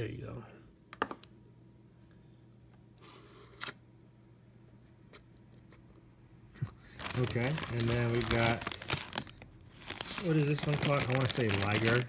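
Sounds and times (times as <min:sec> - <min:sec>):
faint steady hum: 0:00.0 - 0:12.0
handling plastic toys and packaging: 0:06.8 - 0:12.0.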